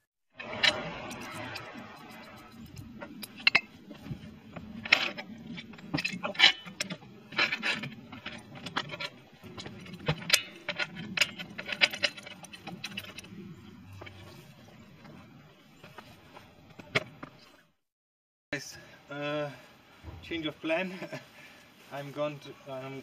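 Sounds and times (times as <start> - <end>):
metal objects clinking and scraping: 0.4 - 17.7.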